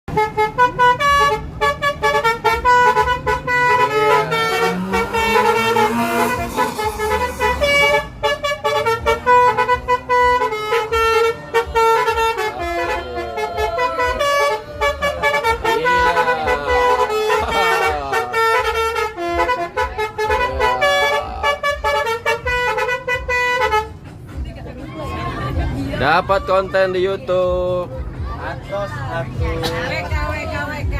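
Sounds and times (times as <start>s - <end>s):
musical air horn tune: 0.1s - 23.9s.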